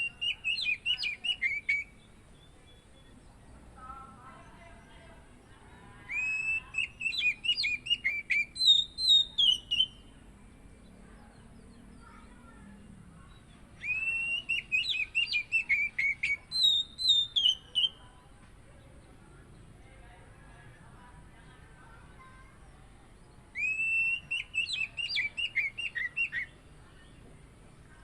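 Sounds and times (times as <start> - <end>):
bird singing whistled phrases: 0.0 - 3.2, 6.1 - 10.1, 13.8 - 18.0, 23.5 - 27.2.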